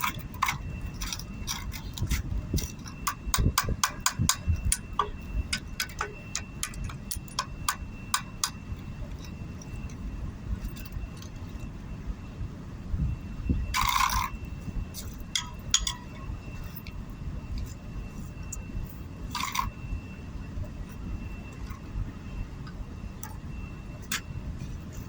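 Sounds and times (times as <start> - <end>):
sharp clicks and clinks: 0.0 - 10.0.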